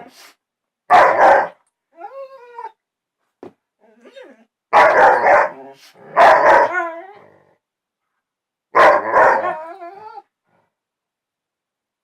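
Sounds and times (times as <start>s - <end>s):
dog barking and howling: 0.9s - 2.7s, 4.0s - 7.4s, 8.7s - 10.2s.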